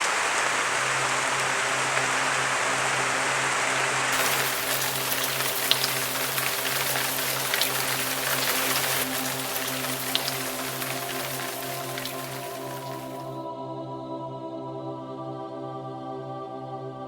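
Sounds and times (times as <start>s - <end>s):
rain falling: 0.0s - 13.4s.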